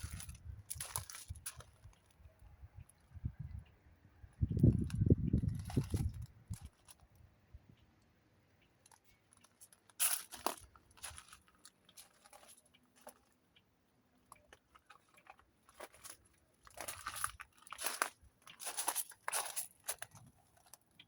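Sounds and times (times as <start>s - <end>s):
footsteps on gravel: 0.0s - 2.0s, 5.4s - 6.9s, 9.4s - 13.2s, 14.4s - 20.7s.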